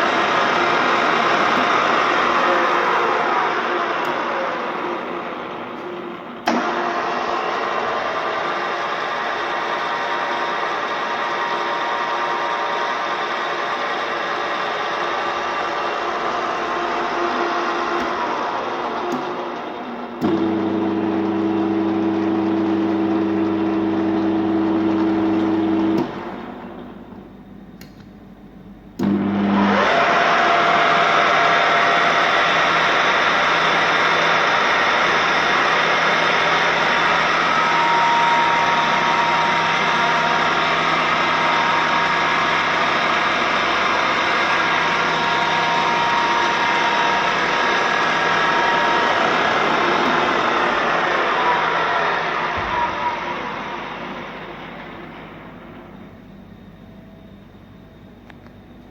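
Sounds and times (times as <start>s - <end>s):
pillar drill running: 0.0s - 27.7s, 28.7s - 58.9s
drill click: 31.4s - 53.6s.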